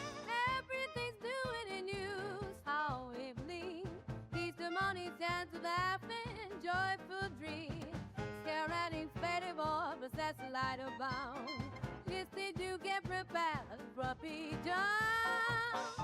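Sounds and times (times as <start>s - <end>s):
song with sung melody: 0.0s - 16.0s
instruments with steady beat: 11.2s - 13.3s.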